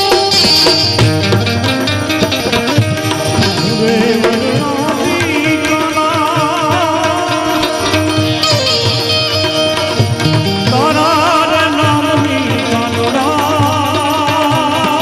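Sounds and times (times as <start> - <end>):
hand drums: 0.0 - 15.0
held melodic line with vibrato: 0.0 - 15.0.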